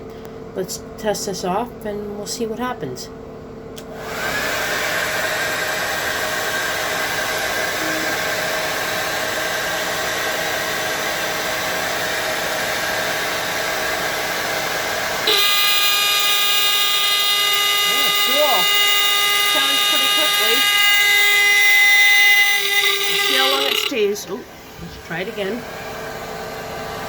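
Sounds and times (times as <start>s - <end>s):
hairdryer blowing: 3.9s - 27.0s
alarm steady pitched tone: 7.7s - 9.1s, 15.3s - 24.5s.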